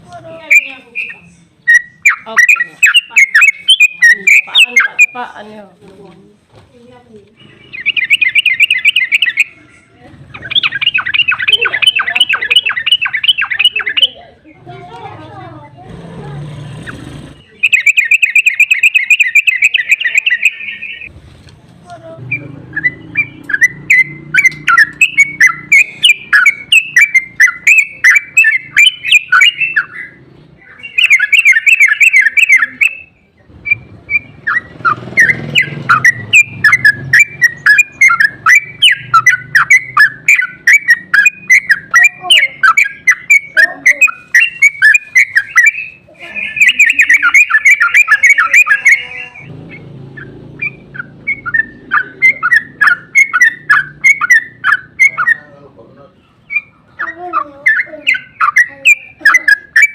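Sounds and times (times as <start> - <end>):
bird chattering song: 0.0 - 6.1, 6.9 - 15.9, 16.6 - 21.1, 22.1 - 59.9
bird rapid trill: 0.3 - 5.4, 7.4 - 14.3, 16.4 - 21.1, 22.2 - 55.7, 56.3 - 59.9.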